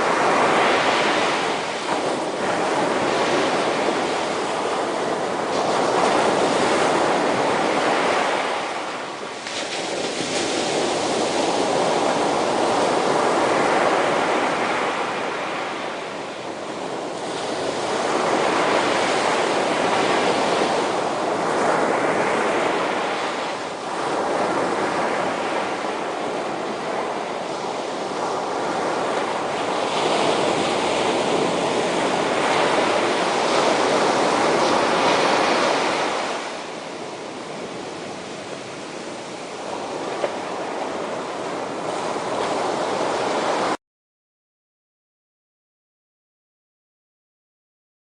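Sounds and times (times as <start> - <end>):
ocean waves breaking on shore: 0.0 - 43.8.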